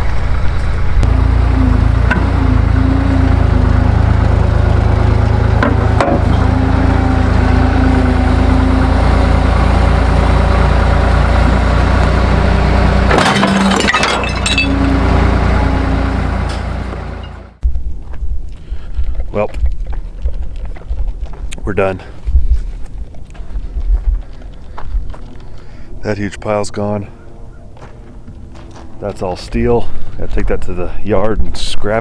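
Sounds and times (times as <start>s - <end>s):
skid steer engine running: 0.0s - 19.1s, 27.0s - 31.0s
junk being crushed: 13.0s - 15.1s.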